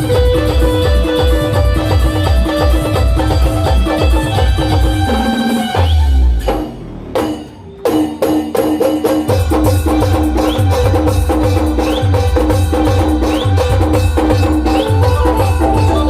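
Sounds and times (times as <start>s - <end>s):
steady bass drum beat: 0.0s - 7.5s, 8.1s - 16.0s
live band music: 0.0s - 16.0s
electronic keyboard: 12.8s - 16.0s.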